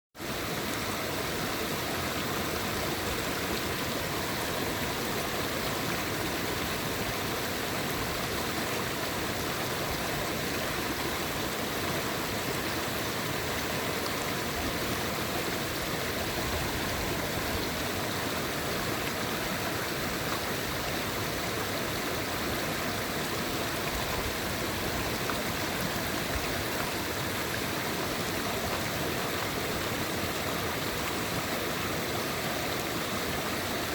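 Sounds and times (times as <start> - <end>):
river stream rushing: 0.2 - 33.9.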